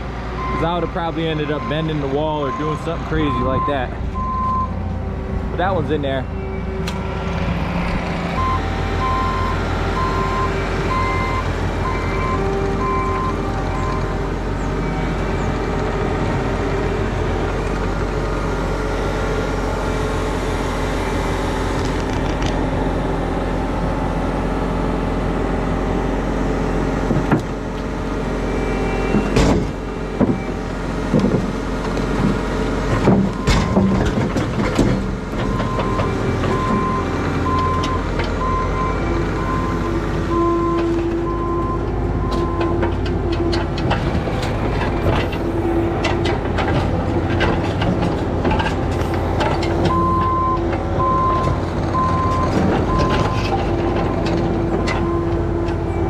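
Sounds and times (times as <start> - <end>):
diesel engine running: 0.0 - 56.0
backup alarm beeping: 1.5 - 4.8, 49.9 - 53.5
knocks and clanks of debris: 32.2 - 36.7.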